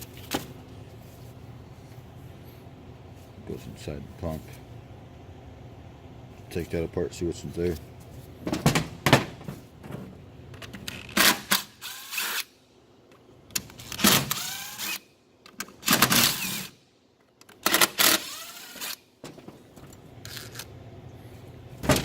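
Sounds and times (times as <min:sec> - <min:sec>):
cordless driver whirring: 0:17.6 - 0:19.0.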